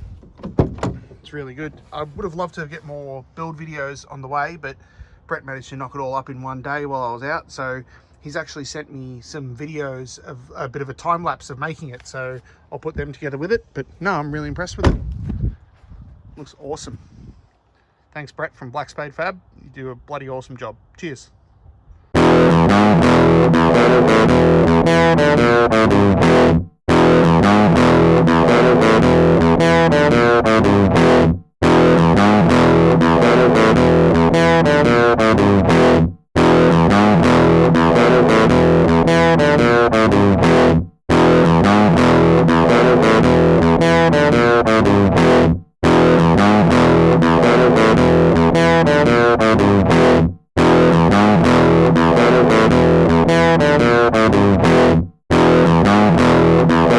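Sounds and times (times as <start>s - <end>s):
distorted electric guitar rock music: 22.2s - 56.9s.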